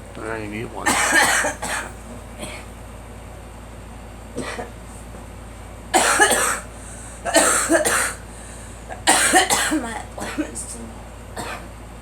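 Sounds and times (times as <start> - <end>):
girl coughing: 0.8 - 2.7, 4.4 - 4.8, 6.0 - 8.2, 8.9 - 10.8, 11.4 - 11.7.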